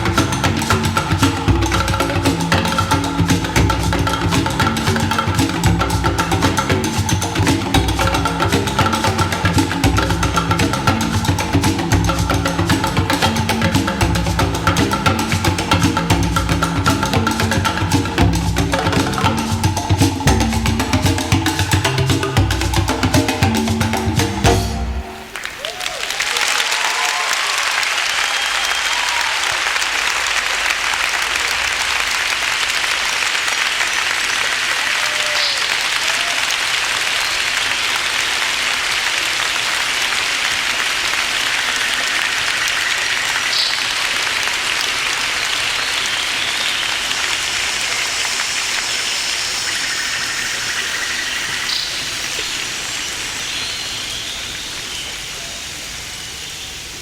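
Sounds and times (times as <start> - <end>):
audience applauding: 24.8 - 51.2.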